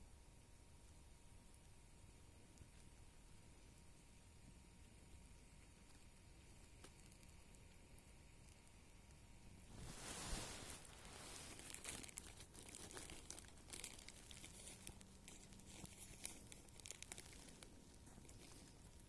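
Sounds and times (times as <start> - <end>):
small crackles: 1.4 - 19.0
crinkling of dry material: 9.7 - 19.0.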